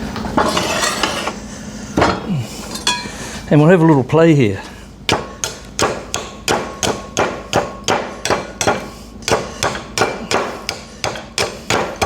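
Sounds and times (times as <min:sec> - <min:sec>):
hand tool striking wood: 0:05.1 - 0:12.0.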